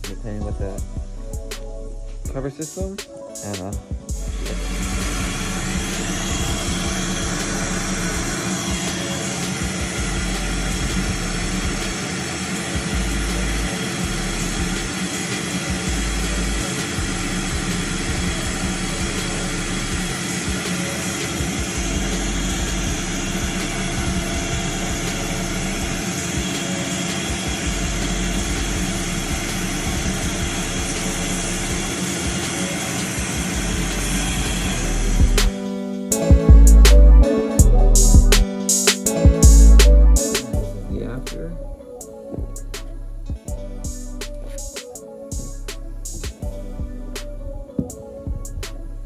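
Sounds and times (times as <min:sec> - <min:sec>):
mechanical hum: 0:04.2 - 0:35.5.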